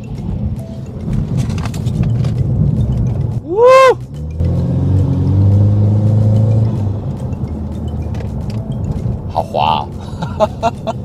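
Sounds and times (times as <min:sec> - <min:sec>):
car engine revving: 0:00.8 - 0:09.3
person shouting woo: 0:03.4 - 0:04.0.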